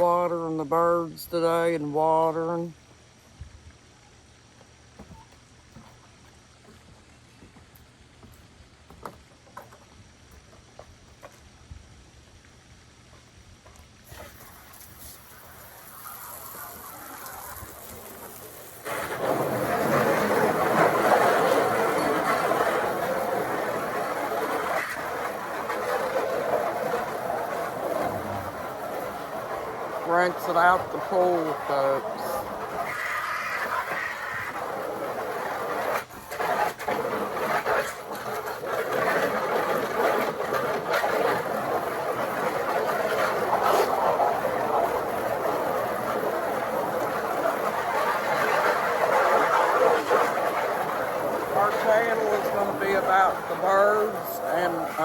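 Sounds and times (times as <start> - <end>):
running water gushing: 12.8 - 55.0.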